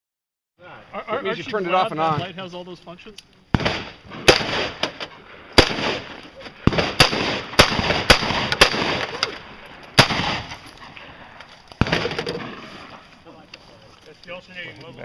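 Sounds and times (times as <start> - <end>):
gunshots with echo: 3.6 - 9.1, 10.0 - 10.6, 11.8 - 12.8.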